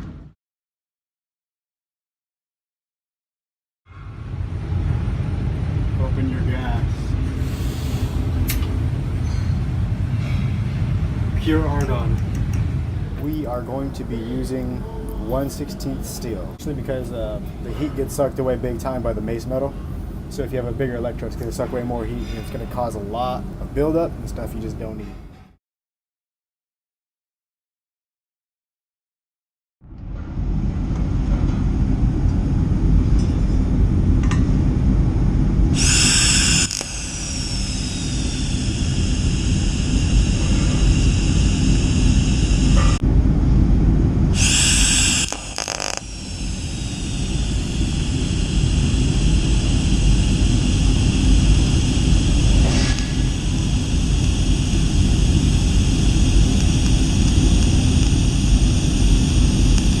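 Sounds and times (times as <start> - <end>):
faint high whine: 29.9 - 60.0
welding rumble: 30.0 - 60.0
bright hissing bursts: 35.7 - 42.9, 44.3 - 60.0.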